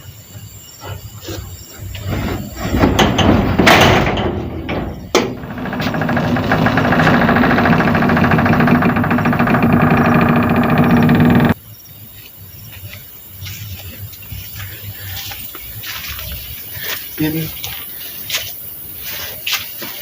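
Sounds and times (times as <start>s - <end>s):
steady humming drone: 1.6s - 11.6s
metal gate scraping and clanking: 2.0s - 11.6s.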